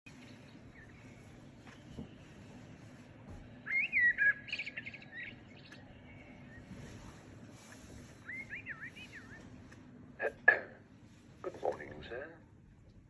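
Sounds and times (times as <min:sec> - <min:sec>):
faint bird chirps: 0:03.6 - 0:09.5
songbird warbling: 0:03.7 - 0:06.6, 0:08.2 - 0:09.4.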